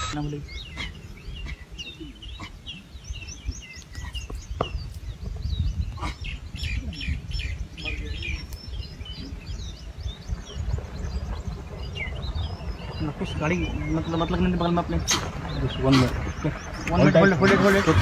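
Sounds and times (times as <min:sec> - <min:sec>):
birds chirping and twittering: 0:00.0 - 0:18.0
low rumble: 0:04.9 - 0:18.0.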